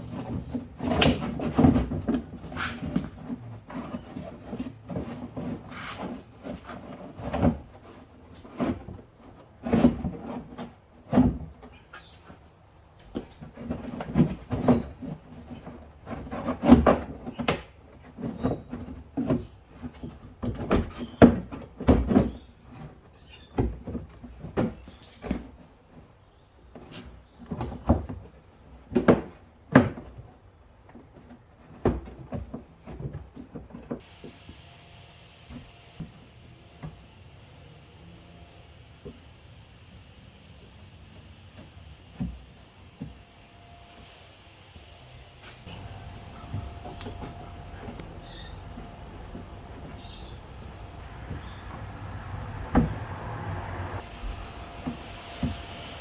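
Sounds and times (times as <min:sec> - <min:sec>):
knocks and clatter of hand work: 0:00.0 - 0:34.1.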